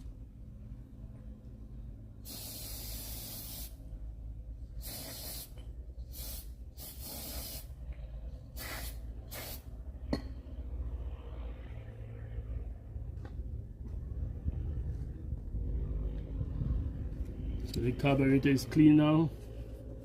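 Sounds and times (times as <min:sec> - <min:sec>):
aerosol spray hissing: 0:02.2 - 0:03.8, 0:04.8 - 0:07.7, 0:08.6 - 0:09.7.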